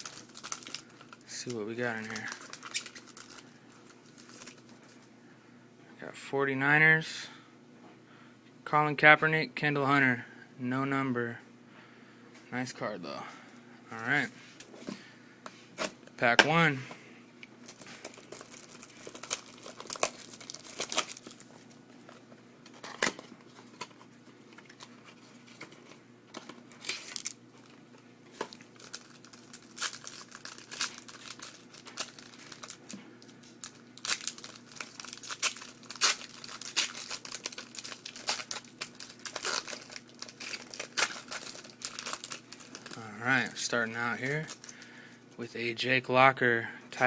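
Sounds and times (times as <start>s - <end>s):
wrapper tearing and crinkling: 0.0s - 4.9s, 17.6s - 21.5s, 26.7s - 27.4s, 28.3s - 44.9s.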